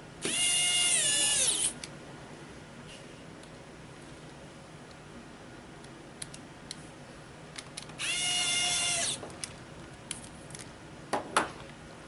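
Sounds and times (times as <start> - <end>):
electric screwdriver motor whine: 0.2 - 1.8, 8.0 - 9.2.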